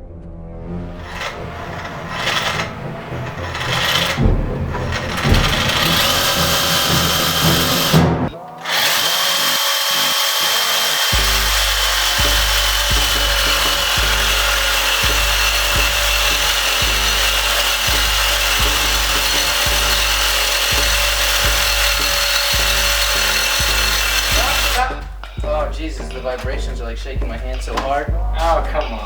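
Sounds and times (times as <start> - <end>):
power saw cutting steel: 0.9 - 25.4.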